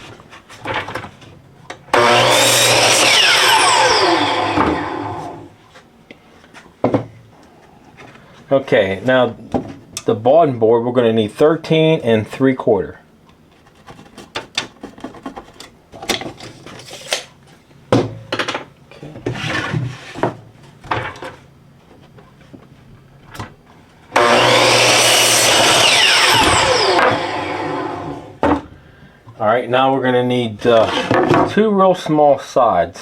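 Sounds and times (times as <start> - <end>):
power saw cutting board: 1.9 - 5.5, 24.1 - 28.4.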